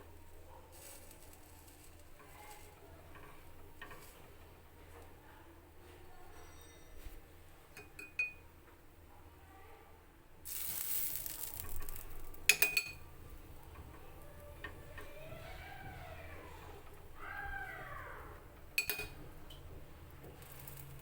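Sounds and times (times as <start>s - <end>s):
light clicks of cookware: 0.7s - 5.2s, 5.8s - 8.8s, 10.5s - 15.1s, 18.6s - 21.0s
short sizzling hiss: 10.5s - 12.4s
utensil clinking against pan: 10.5s - 13.1s, 18.8s - 19.6s.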